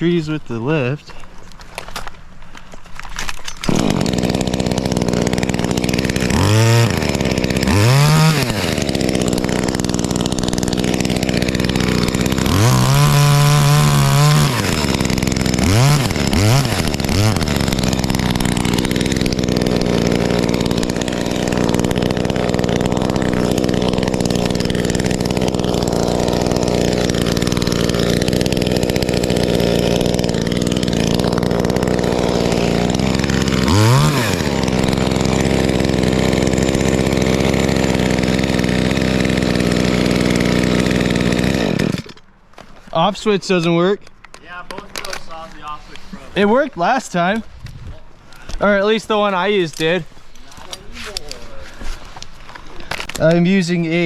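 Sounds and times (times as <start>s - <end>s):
chainsaw running and revving: 3.6s - 42.2s.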